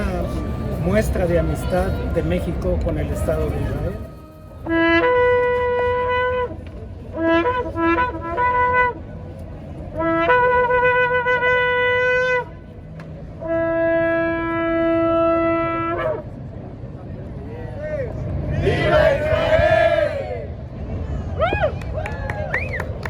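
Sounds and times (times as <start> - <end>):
shofar blasts: 3.1 - 9.0.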